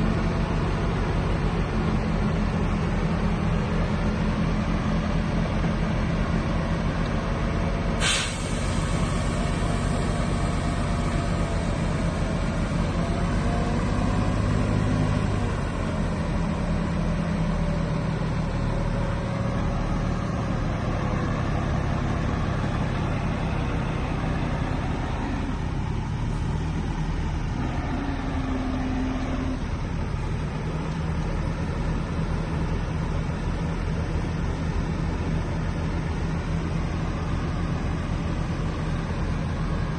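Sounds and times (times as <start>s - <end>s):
heavy diesel engines running: 0.0s - 39.9s.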